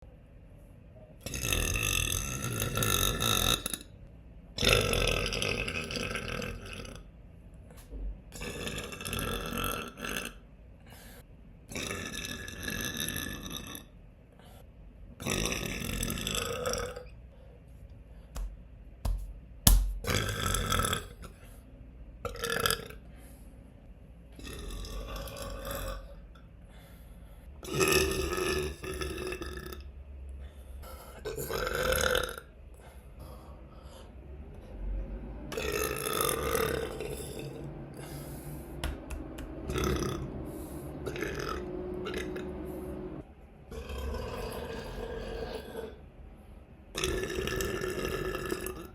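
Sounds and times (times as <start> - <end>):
person burping: 1.3 - 3.8, 4.6 - 7.0, 8.4 - 10.4, 11.7 - 13.6, 20.0 - 21.2, 31.2 - 32.5, 43.7 - 45.9, 47.0 - 48.9.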